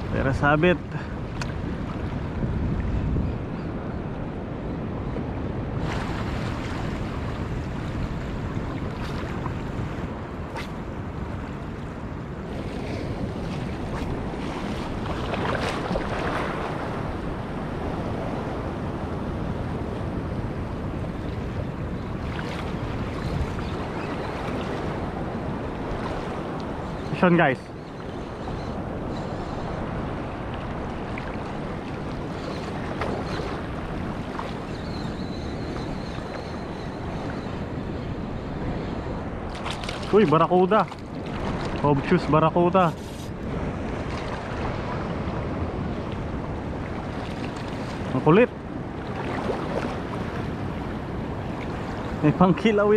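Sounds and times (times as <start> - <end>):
sea waves on shore: 0.0 - 52.9
wind buffeting microphone: 0.0 - 52.9
sea surf washing in: 5.6 - 27.6.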